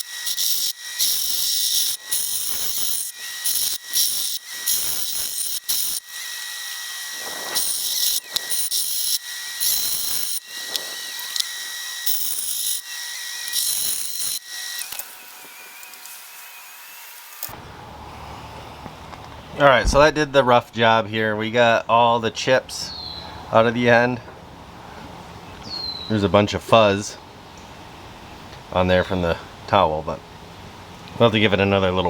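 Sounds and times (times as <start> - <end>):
grindstone motor whine: 0.0 - 18.6.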